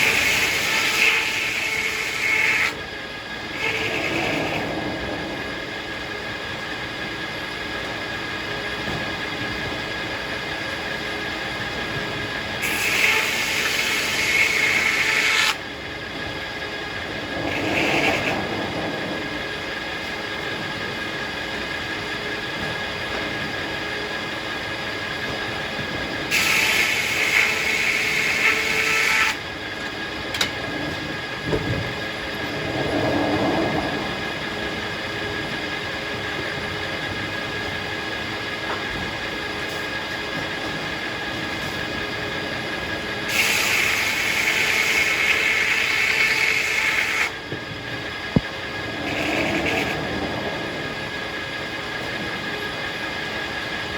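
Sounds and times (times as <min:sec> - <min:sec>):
saw blade cutting log: 0:00.0 - 0:02.8, 0:03.5 - 0:04.6, 0:12.6 - 0:15.6, 0:26.3 - 0:29.4, 0:43.3 - 0:47.3
sawmill humming: 0:00.0 - 0:53.9.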